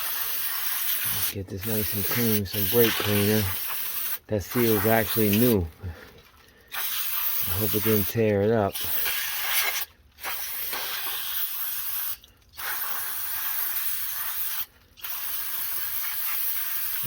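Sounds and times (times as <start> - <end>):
aerosol spray hissing: 0.0 - 5.5.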